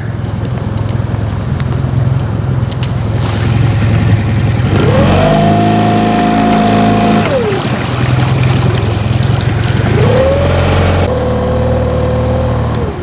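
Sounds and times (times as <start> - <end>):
boat motor revving: 0.0 - 13.0.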